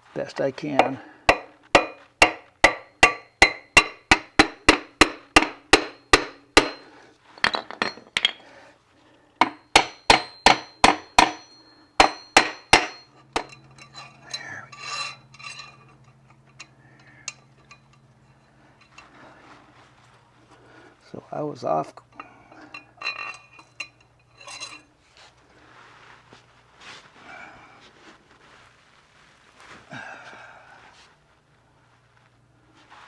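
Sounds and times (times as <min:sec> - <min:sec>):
low steady hum: 0:00.0 - 0:33.0
hammer striking wood: 0:00.8 - 0:06.9, 0:09.4 - 0:13.0
faint metal clinks: 0:09.4 - 0:19.4.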